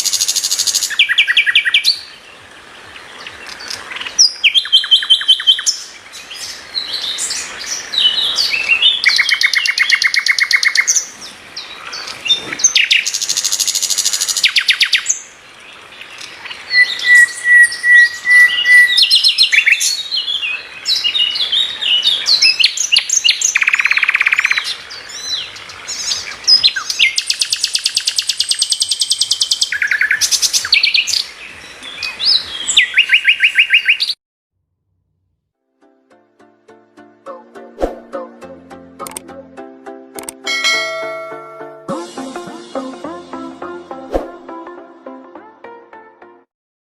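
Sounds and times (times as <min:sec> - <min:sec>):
songbird chirps: 0:00.0 - 0:34.2.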